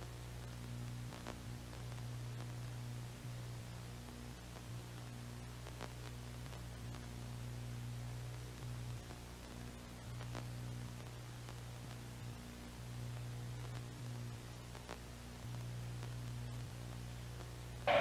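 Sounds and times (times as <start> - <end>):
faint hiss: 0.0 - 18.0
low electrical hum: 0.0 - 18.0
faint ticks: 13.1 - 17.6.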